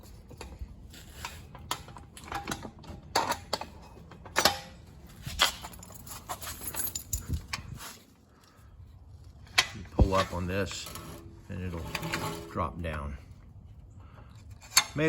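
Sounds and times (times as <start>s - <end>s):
metal clicks and clinks: 5.4s - 7.7s.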